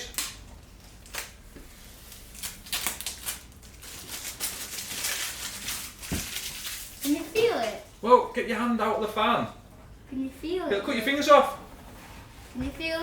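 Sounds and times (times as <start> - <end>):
plastic film crackling as peeled: 0.0 - 7.9.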